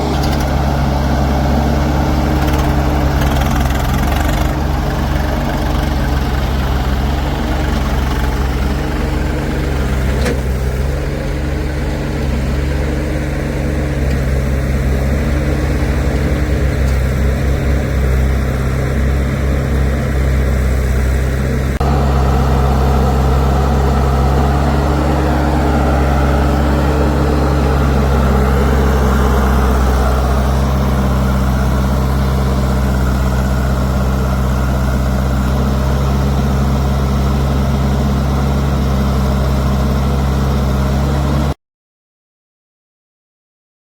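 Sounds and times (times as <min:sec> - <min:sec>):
diesel engines running: 0:00.0 - 0:41.6.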